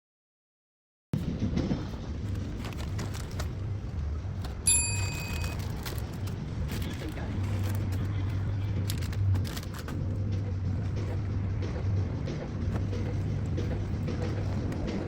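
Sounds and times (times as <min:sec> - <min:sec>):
steady low hum: 0:01.2 - 0:15.0
handling rustle: 0:01.8 - 0:11.3
bell-like ding: 0:04.7 - 0:05.6.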